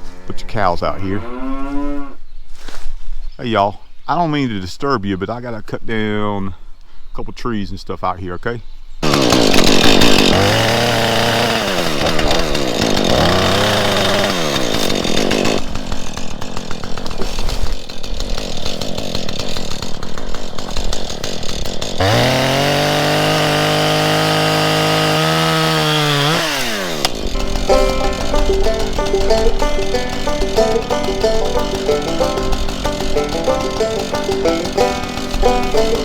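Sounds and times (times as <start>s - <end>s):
chainsaw cutting wood: 9.0s - 36.0s
chainsaw revving and idling: 9.0s - 36.0s.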